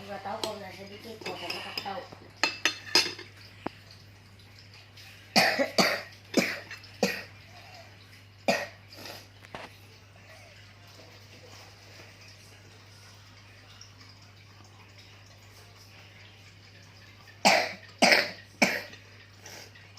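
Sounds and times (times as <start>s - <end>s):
person coughing: 5.4s - 7.3s.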